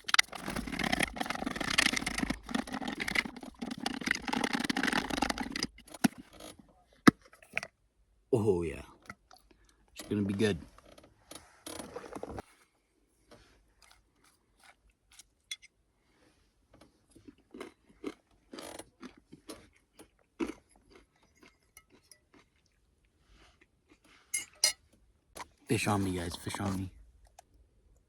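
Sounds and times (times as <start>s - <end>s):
person chewing crunchy food: 0.0s - 7.7s, 13.8s - 15.5s, 17.0s - 24.7s.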